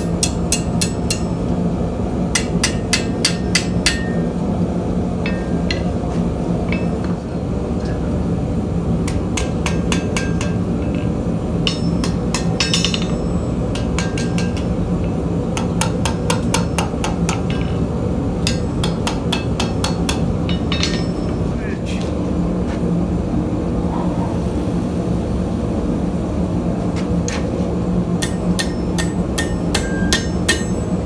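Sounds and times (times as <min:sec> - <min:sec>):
hammer striking metal on anvil: 0:00.0 - 0:01.6, 0:02.3 - 0:04.5, 0:05.2 - 0:07.2, 0:09.0 - 0:14.9, 0:15.5 - 0:21.6, 0:28.2 - 0:31.0
steady low hum: 0:00.0 - 0:31.0.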